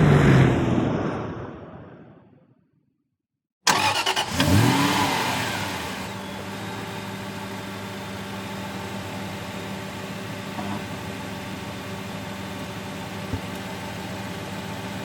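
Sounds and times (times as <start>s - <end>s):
car engine starting and revving: 3.7s - 6.6s
car engine idling: 3.7s - 15.0s.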